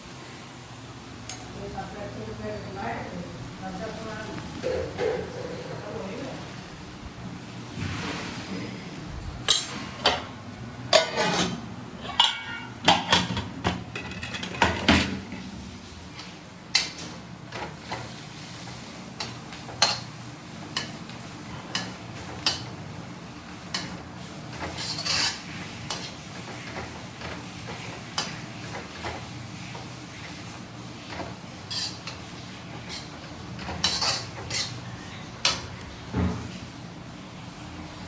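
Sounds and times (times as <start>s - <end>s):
pots and pans clattering: 4.5s - 6.2s, 9.4s - 15.5s, 16.2s - 23.0s, 23.6s - 36.5s.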